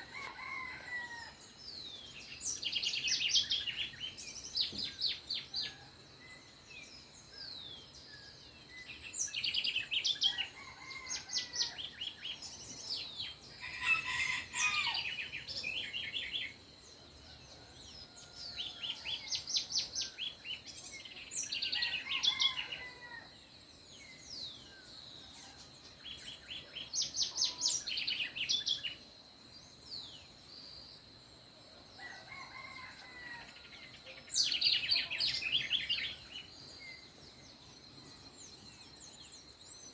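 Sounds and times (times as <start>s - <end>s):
rooster crowing: 0.0s - 1.4s, 13.6s - 15.2s
songbirds trilling: 0.0s - 39.9s.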